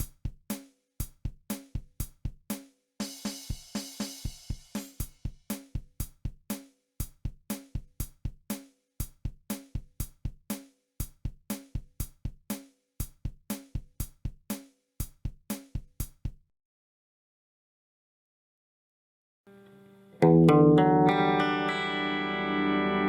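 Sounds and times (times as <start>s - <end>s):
rock drum beat: 0.0s - 16.4s.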